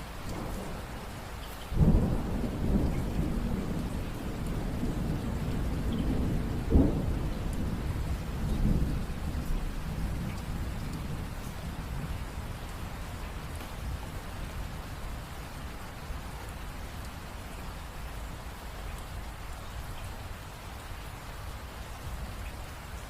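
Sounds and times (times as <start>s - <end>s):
rain falling: 0.0s - 23.0s
thunder rumbling: 0.3s - 18.4s.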